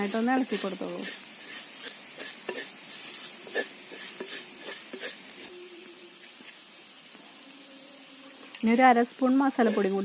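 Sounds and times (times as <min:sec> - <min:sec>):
onions sizzling: 0:00.0 - 0:10.0
spoon scraping stone pot: 0:00.1 - 0:05.5, 0:08.5 - 0:10.0.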